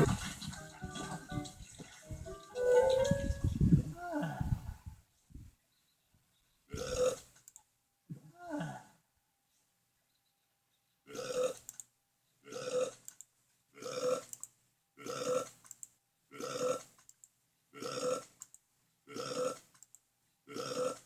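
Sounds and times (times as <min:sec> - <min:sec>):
cartoon burp: 0:06.7 - 0:07.2, 0:11.1 - 0:11.6, 0:12.5 - 0:13.0, 0:13.8 - 0:14.3, 0:15.0 - 0:15.6, 0:16.3 - 0:16.9, 0:17.8 - 0:18.3, 0:19.1 - 0:19.7, 0:20.5 - 0:21.0.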